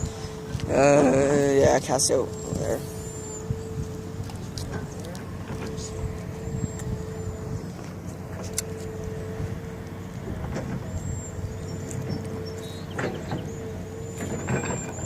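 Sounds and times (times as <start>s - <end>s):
motor rumbling and humming: 0.0s - 15.0s.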